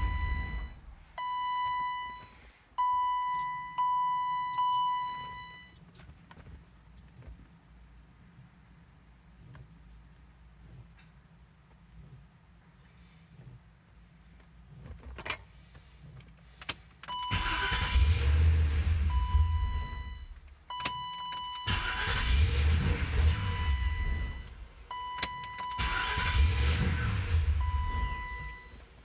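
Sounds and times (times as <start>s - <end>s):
electronic warning tone: 0.0s - 5.5s
car starter cranking engine: 16.5s - 29.0s.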